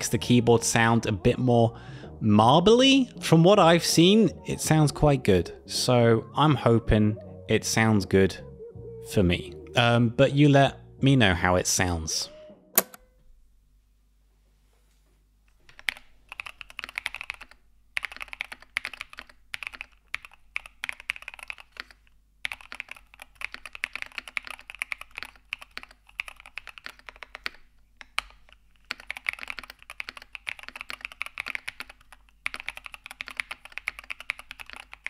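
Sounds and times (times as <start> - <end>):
mechanical keyboard typing: 15.7 - 35.0.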